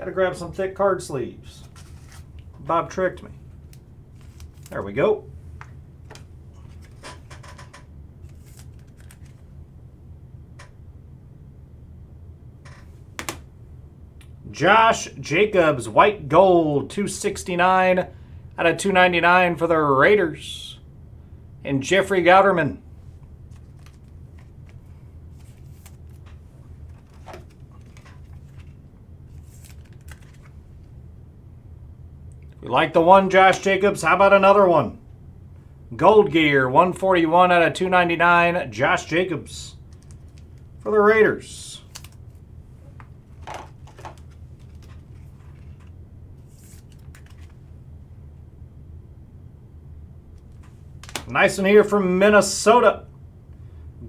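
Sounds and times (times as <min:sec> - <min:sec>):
low steady hum: 0:00.0 - 0:54.0
cards rustling and tapping: 0:01.6 - 0:02.6, 0:03.6 - 0:04.8, 0:05.6 - 0:09.5, 0:12.7 - 0:13.5, 0:23.5 - 0:30.9, 0:39.8 - 0:40.8, 0:41.8 - 0:47.7, 0:50.4 - 0:51.3.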